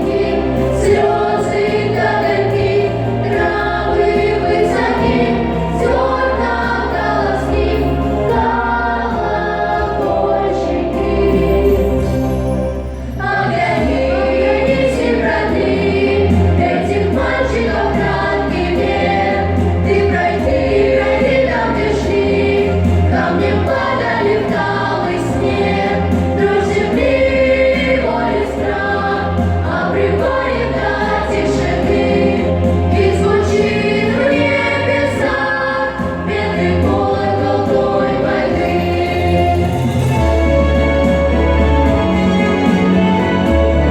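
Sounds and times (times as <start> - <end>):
bass line: 0.0 - 43.9
choir singing with instruments: 0.0 - 43.9.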